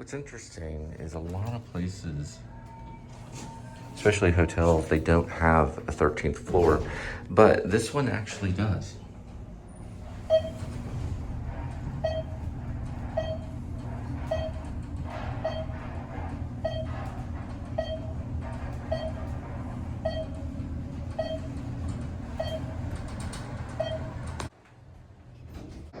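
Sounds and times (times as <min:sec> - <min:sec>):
elevator hum: 0:00.0 - 0:26.0
elevator chime: 0:09.9 - 0:24.5.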